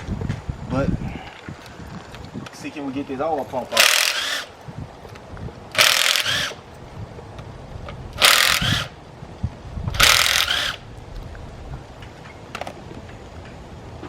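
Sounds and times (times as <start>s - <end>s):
power drill whirring: 3.7s - 4.6s, 5.7s - 6.6s, 8.2s - 9.0s, 9.9s - 10.8s.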